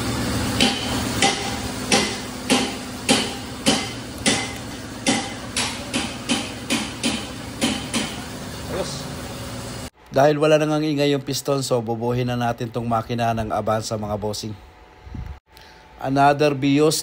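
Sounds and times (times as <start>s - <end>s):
sharp metal taps ringing: 0.6s - 8.2s.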